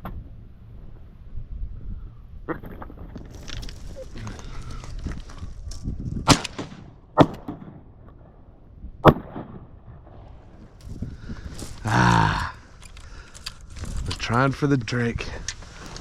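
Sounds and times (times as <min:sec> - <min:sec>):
wind noise: 0:00.0 - 0:06.9, 0:08.0 - 0:16.0
shotgun shots: 0:06.2 - 0:07.8.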